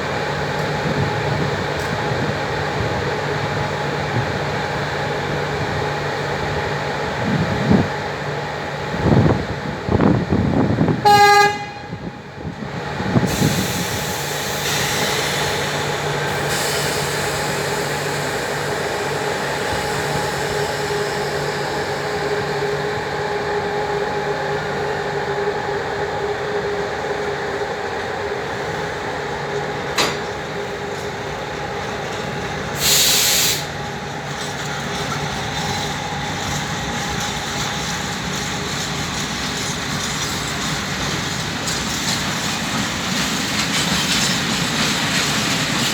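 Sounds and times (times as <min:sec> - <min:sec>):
train humming and droning: 0:00.0 - 0:45.9
short hiss: 0:32.8 - 0:33.7.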